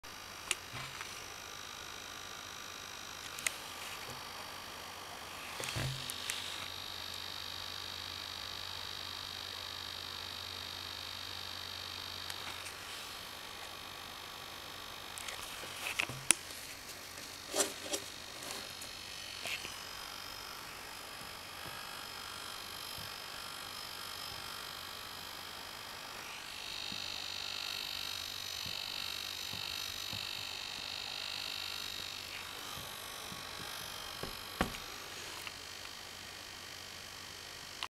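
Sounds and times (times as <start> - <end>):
laptop high-pitched whine: 0.1 - 37.9
faint irregular ticks: 0.2 - 4.4, 12.1 - 13.8, 18.0 - 34.6.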